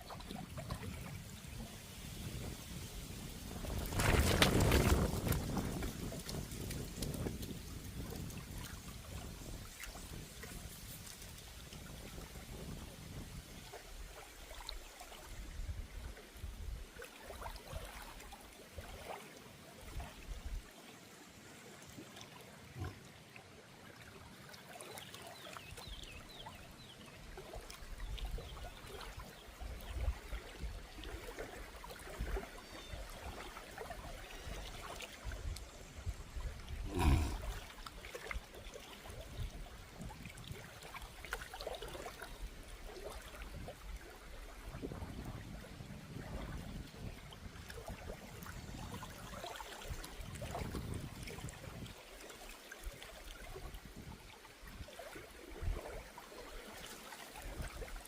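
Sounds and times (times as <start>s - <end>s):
wind rumbling on microphone: 0.0s - 19.1s, 27.8s - 41.4s, 42.3s - 52.0s, 52.9s - 56.1s
water trickling in river: 0.0s - 58.0s.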